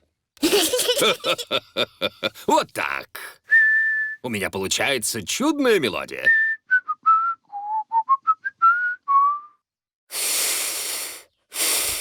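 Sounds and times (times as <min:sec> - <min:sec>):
person whistling a tune: 0:03.5 - 0:04.2, 0:06.3 - 0:09.6
breathy hiss of blown air: 0:10.1 - 0:12.0.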